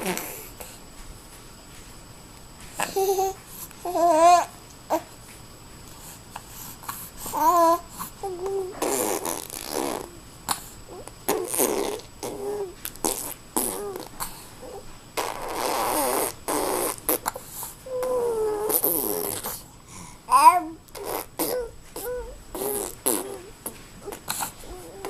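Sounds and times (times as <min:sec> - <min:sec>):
child babbling: 0:02.8 - 0:05.0, 0:07.4 - 0:10.2, 0:10.9 - 0:12.8, 0:13.6 - 0:16.2, 0:17.9 - 0:19.5, 0:20.3 - 0:25.0
boys making fart noises: 0:08.8 - 0:10.1, 0:11.3 - 0:12.4, 0:15.2 - 0:17.3, 0:21.0 - 0:21.7, 0:22.6 - 0:23.5.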